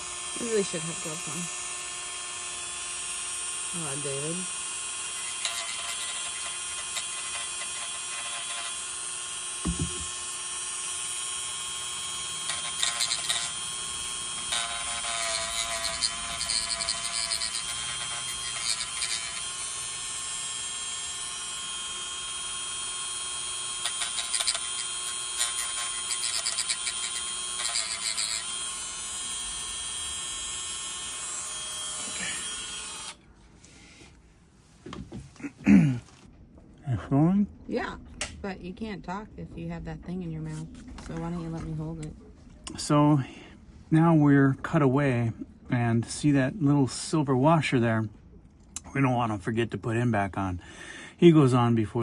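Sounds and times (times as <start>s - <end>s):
rotary tool grinding rubber: 0.0s - 33.2s.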